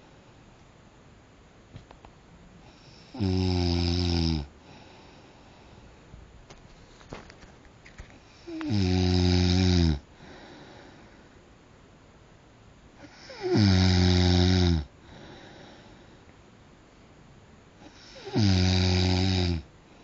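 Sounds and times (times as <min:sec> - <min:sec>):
person snoring: 0:02.7 - 0:05.2, 0:08.3 - 0:11.0, 0:13.0 - 0:15.9, 0:17.8 - 0:19.7.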